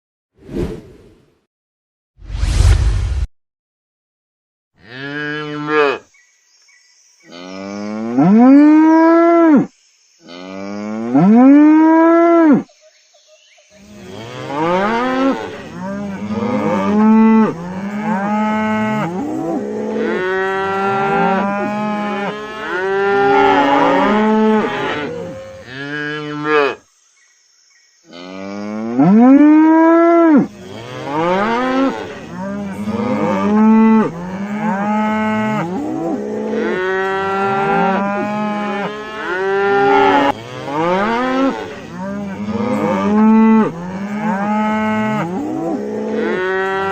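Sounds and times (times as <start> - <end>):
cows mooing: 4.8 - 6.0, 13.9 - 26.8, 28.1 - 46.9.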